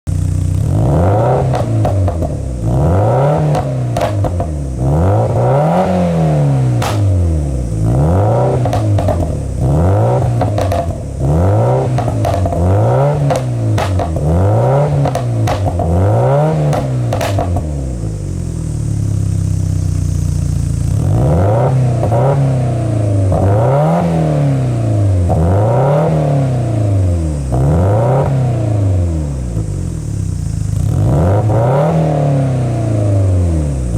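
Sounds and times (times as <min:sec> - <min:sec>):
car engine idling: 0:00.0 - 0:21.3
exhaust pops and crackles: 0:00.1 - 0:21.0
car engine revving: 0:00.2 - 0:33.9.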